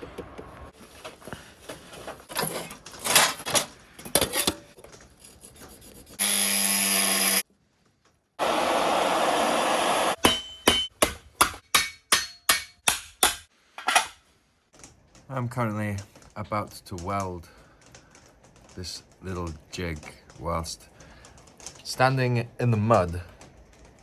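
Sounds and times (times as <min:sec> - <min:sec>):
tool scraping and knocking: 0:02.0 - 0:06.2
loud steady tool noise: 0:06.2 - 0:07.4, 0:08.4 - 0:10.2.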